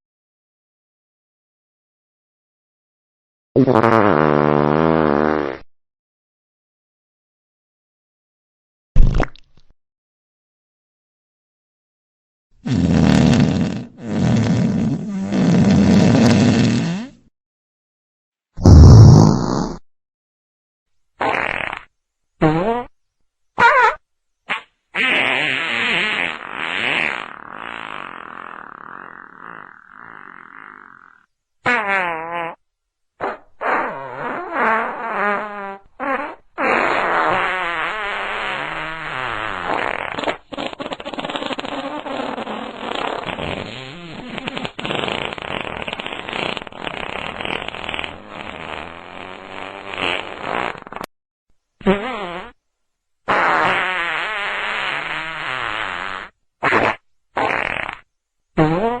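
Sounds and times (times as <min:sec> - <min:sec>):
farts: 0:03.6 - 0:05.7, 0:12.6 - 0:17.3, 0:18.6 - 0:19.8, 0:21.2 - 0:22.9, 0:23.6 - 0:32.6, 0:33.2 - 0:51.1, 0:51.8 - 0:52.6, 0:53.3 - 0:59.0.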